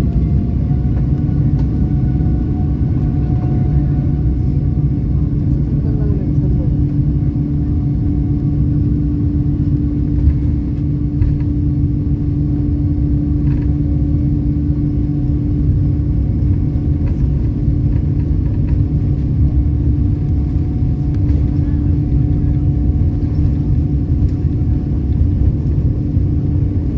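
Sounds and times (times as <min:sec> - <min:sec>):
droning hum: 0:00.0 - 0:26.9
vehicle rumbling in motion: 0:00.0 - 0:26.9.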